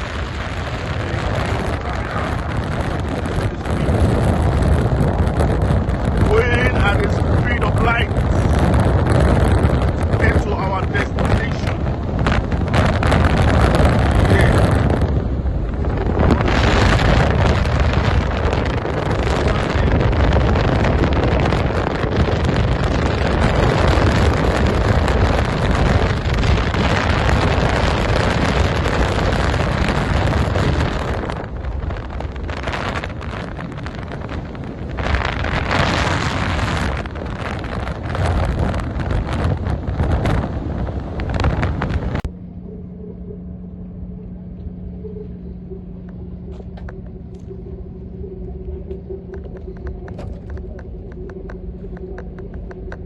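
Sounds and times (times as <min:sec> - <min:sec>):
steady low rumble: 0:00.0 - 0:53.0
wind buffeting microphone: 0:00.0 - 0:53.0.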